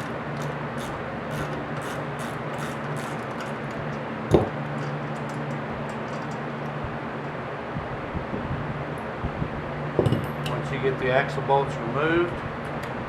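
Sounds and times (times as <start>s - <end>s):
metallic ratchet clicks: 0.0s - 3.9s
steady low hum: 0.0s - 13.0s
single knock: 4.3s - 4.6s.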